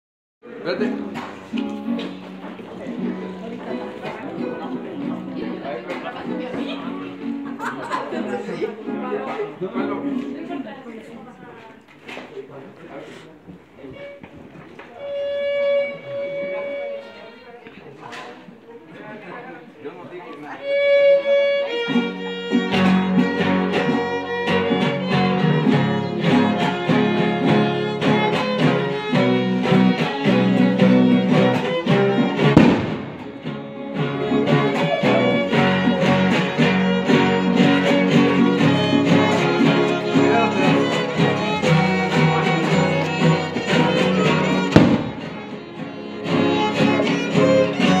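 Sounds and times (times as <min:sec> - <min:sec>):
violin: 0:00.4 - 0:11.4, 0:12.1 - 0:48.0
guitar: 0:00.4 - 0:12.3, 0:13.4 - 0:18.7, 0:20.3 - 0:48.0.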